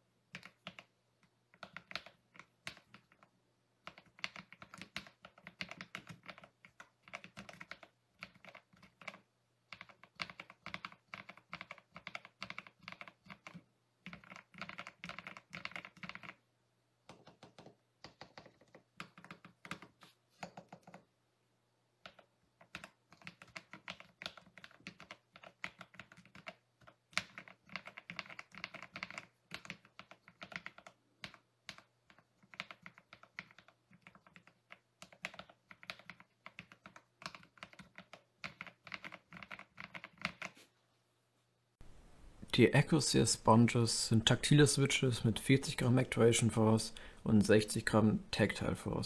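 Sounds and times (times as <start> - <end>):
mechanical keyboard typing: 0.3 - 0.9, 1.5 - 16.4, 17.1 - 21.0, 22.0 - 40.6.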